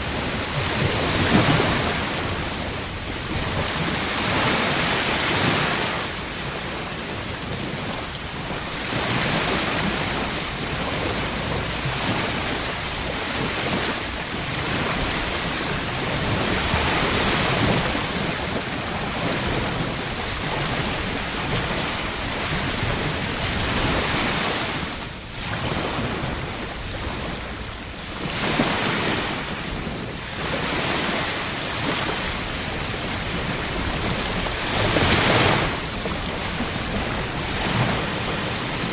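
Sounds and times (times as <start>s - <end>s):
ocean waves breaking: 0.0s - 38.9s.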